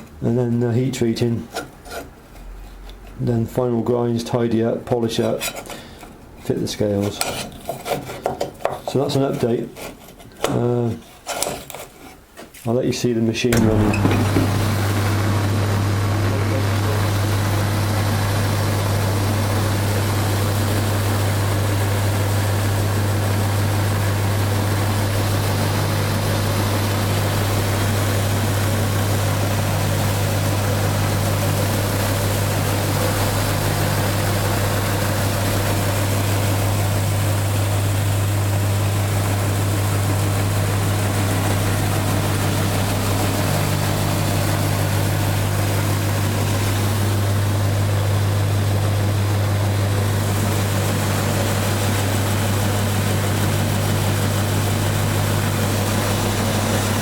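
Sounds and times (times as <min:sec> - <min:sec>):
belt grinder motor hum: 0:13.6 - 0:57.0.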